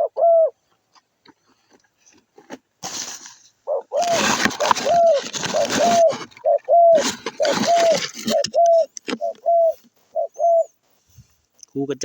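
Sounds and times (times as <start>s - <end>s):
dove cooing: 0.0s - 0.6s, 3.6s - 10.8s
rustling noise: 1.3s - 10.2s.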